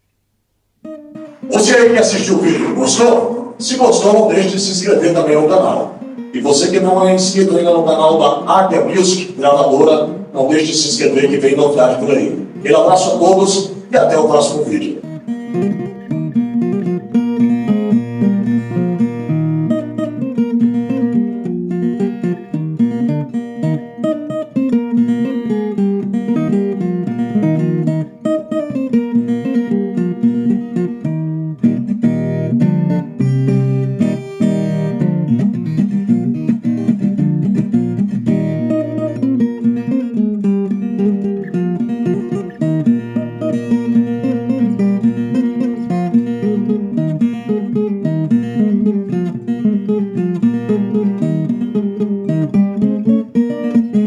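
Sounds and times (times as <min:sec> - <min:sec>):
acoustic guitar: 0:00.0 - 0:54.0
plucked and strummed viola: 0:00.8 - 0:54.0.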